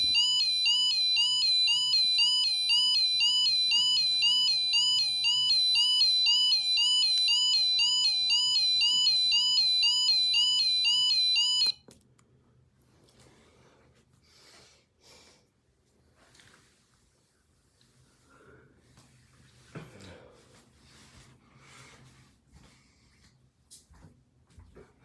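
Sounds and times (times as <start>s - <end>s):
electronic two-tone warble alarm: 0.0s - 11.8s.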